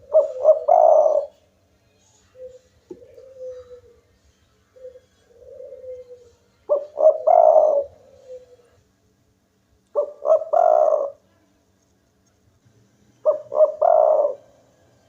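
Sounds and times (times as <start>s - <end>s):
dove cooing: 0.0s - 1.4s, 2.2s - 8.8s, 10.0s - 11.3s, 13.2s - 14.8s.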